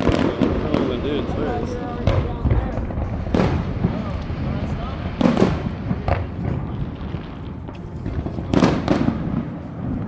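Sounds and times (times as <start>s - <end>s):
fireworks bangs: 0.0s - 10.0s.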